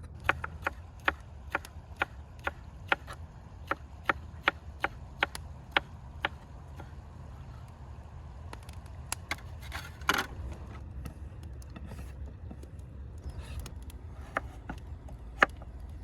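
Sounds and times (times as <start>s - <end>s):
knife chopping on cutting board: 0.2s - 6.4s.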